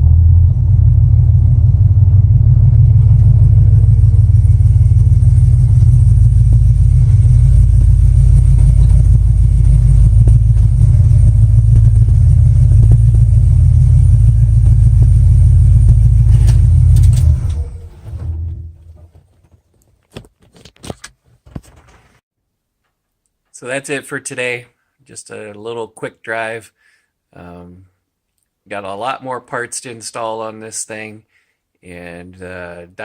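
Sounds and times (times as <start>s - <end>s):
supercharged engine rumbling: 0.0s - 19.2s.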